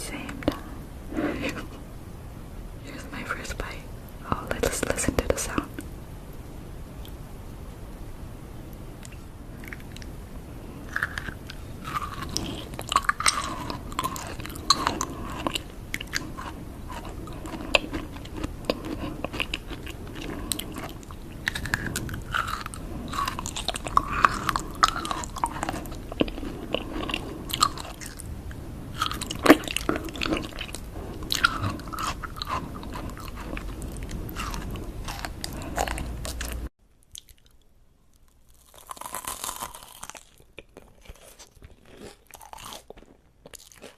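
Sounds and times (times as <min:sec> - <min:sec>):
chewing: 0:10.8 - 0:43.9
crunching bites: 0:10.9 - 0:28.2, 0:29.0 - 0:36.6, 0:38.5 - 0:43.9.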